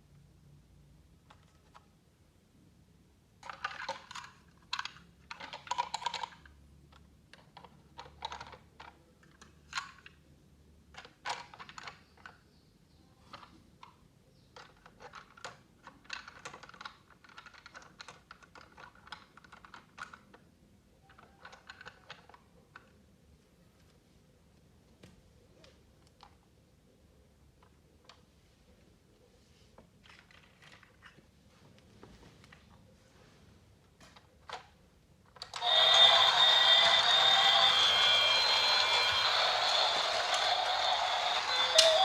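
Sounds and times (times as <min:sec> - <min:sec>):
plastic toy pieces clicking: 0:03.4 - 0:10.2, 0:10.9 - 0:12.4, 0:13.3 - 0:20.5, 0:21.1 - 0:22.9, 0:35.3 - 0:42.0.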